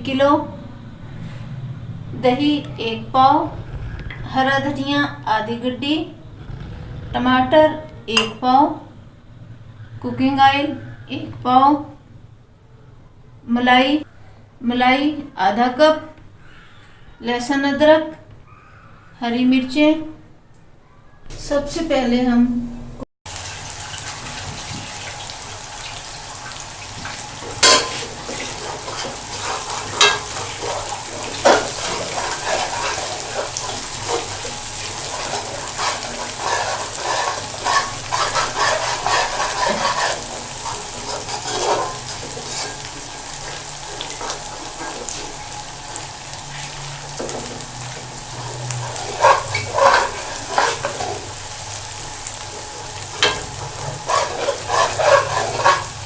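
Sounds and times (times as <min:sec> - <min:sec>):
onions sizzling in oil: 0:23.3 - 0:56.0.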